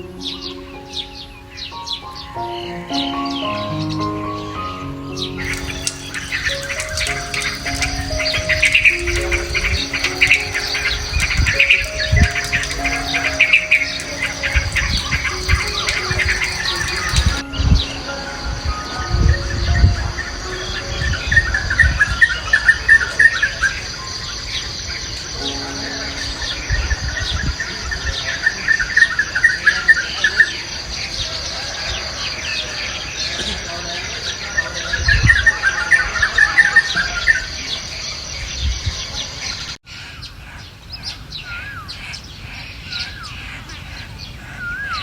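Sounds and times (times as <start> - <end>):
birds singing: 0.0 - 45.0
fast trilling bird phrase: 5.4 - 17.4
insects chirring: 5.4 - 17.5.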